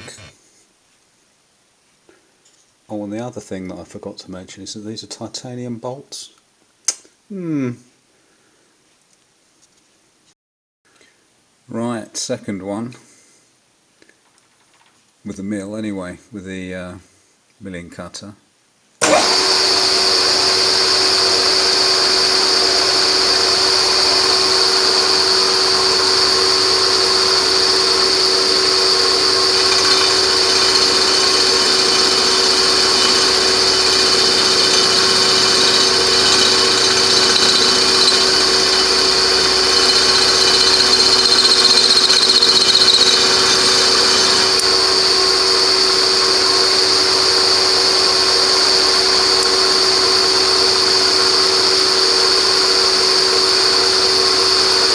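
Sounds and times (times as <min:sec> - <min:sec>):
milling machine cutting metal: 0:00.0 - 0:00.3, 0:19.0 - 0:54.9.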